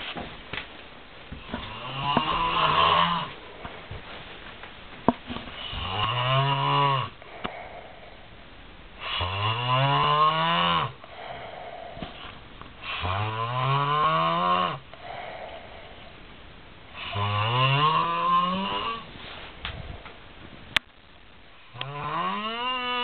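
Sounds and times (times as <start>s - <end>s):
quiet breaths: 0.0s - 23.0s
person snoring loudly: 1.5s - 3.6s, 5.6s - 8.2s, 9.0s - 16.0s, 16.9s - 19.1s, 21.7s - 23.0s.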